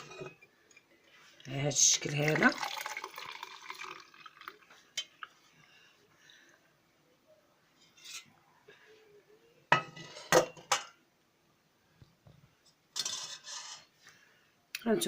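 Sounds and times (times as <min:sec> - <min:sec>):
kitchenware clinking and knocking: 0:00.0 - 0:00.5, 0:09.7 - 0:11.0, 0:13.0 - 0:13.9.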